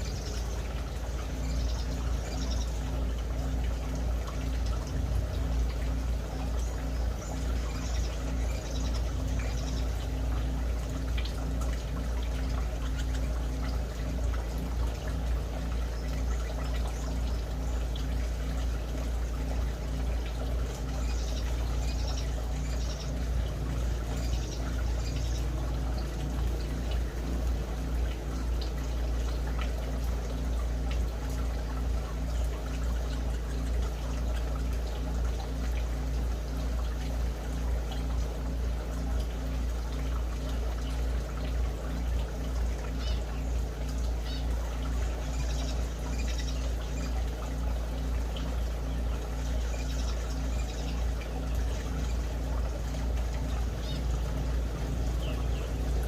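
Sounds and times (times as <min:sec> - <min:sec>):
small birds calling: 0:00.0 - 0:56.0
trickling water-like noise: 0:00.0 - 0:56.0.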